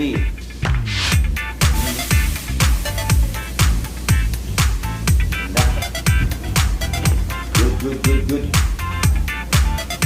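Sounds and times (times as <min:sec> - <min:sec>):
bass line: 0:00.0 - 0:10.0
electronic dance music: 0:00.0 - 0:10.0
steady kick drum: 0:00.0 - 0:10.0.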